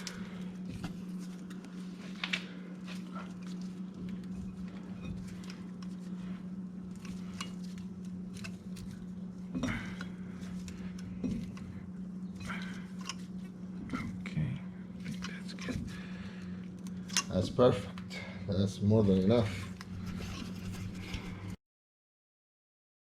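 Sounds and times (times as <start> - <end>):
steady low hum: 0.0 - 21.6.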